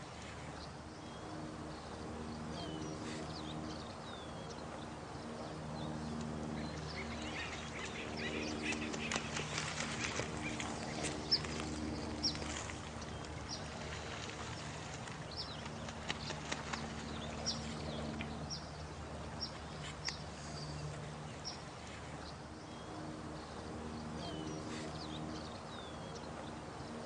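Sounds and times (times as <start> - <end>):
low steady hum: 0.0 - 27.0
faint clicks: 20.0 - 20.2.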